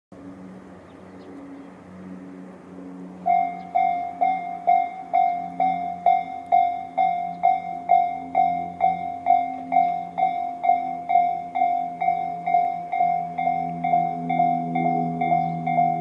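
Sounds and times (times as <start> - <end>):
electronic level crossing bell: 3.3 - 16.0.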